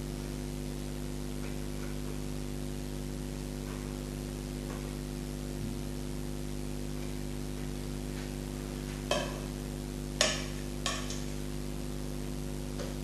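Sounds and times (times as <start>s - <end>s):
steady low hum: 0.0s - 13.0s
utensils clicking against a dish: 9.1s - 9.5s, 10.2s - 11.4s.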